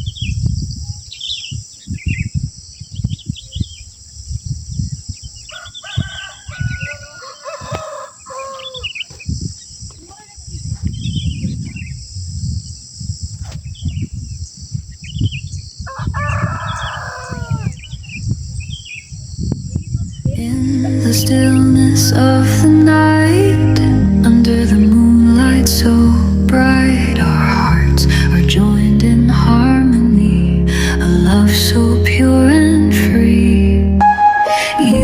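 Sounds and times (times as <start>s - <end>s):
rooster crowing: 5.5s - 8.9s, 15.9s - 17.8s.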